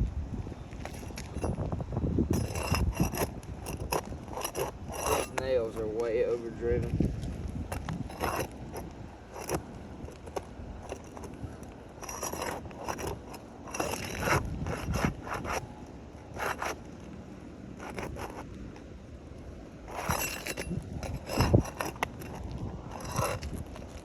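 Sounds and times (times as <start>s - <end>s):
wind rumble on microphone: 0.0s - 24.0s
metal tool scraping roof shingles: 0.8s - 1.7s, 2.3s - 7.0s, 7.7s - 16.9s, 17.7s - 18.9s, 19.8s - 24.0s.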